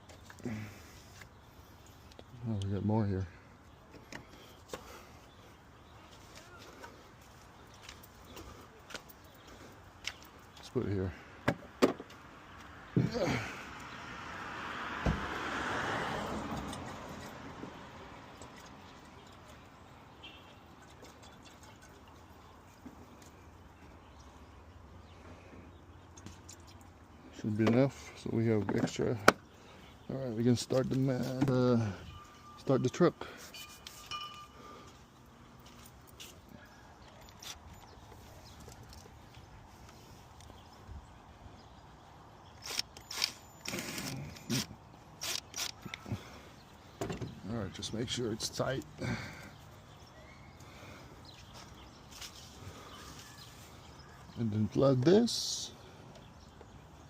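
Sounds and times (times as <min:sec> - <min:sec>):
tools clicking and scraping: 0:33.4 - 0:34.5, 0:42.6 - 0:46.1.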